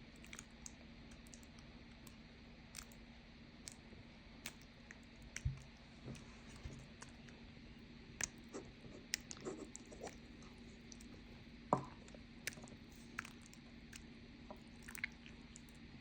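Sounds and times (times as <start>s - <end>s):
steady low hum: 0.0s - 16.0s
small sticky clicks: 0.1s - 3.0s, 3.6s - 3.8s, 4.4s - 7.4s
slime squishing: 8.2s - 15.8s.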